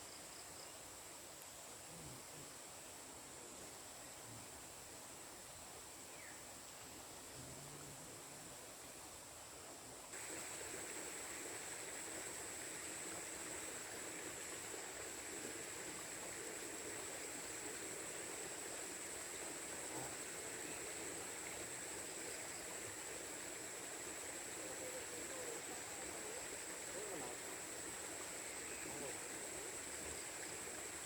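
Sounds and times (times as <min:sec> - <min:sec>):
steady rain: 0:09.2 - 0:31.0.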